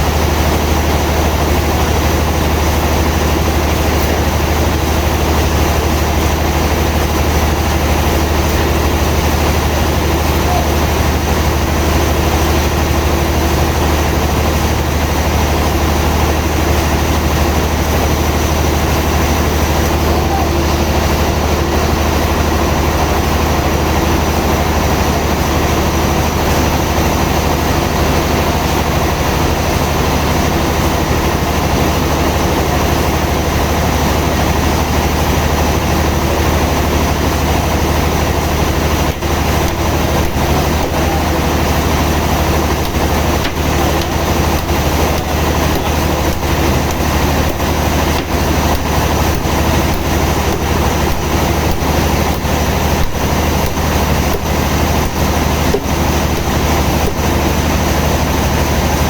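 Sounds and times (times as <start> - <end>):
sawmill machinery droning: 0.0 - 59.0.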